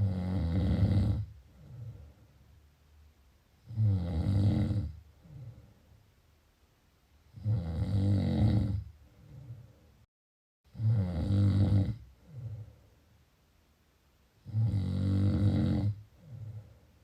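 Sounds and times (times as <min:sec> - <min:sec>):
loud rattling snores: 0:00.0 - 0:01.3, 0:03.6 - 0:05.0, 0:07.3 - 0:08.9, 0:10.7 - 0:12.0, 0:14.4 - 0:16.0
soft breath out: 0:01.4 - 0:02.5, 0:05.1 - 0:06.0, 0:09.0 - 0:10.1, 0:12.2 - 0:13.1, 0:16.1 - 0:17.0.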